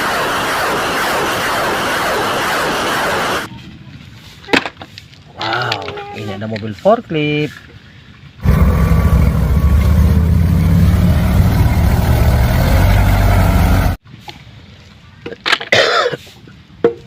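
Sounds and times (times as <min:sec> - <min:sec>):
vehicle engine rumbling: 0:08.4 - 0:14.0.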